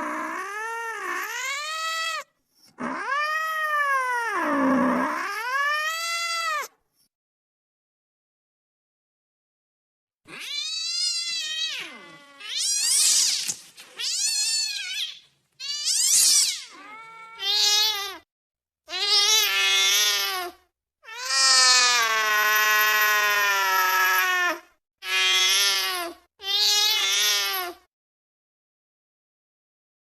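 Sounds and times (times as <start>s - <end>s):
cat yowling: 0.0s - 6.7s, 10.3s - 13.4s, 14.0s - 18.2s, 18.9s - 27.8s.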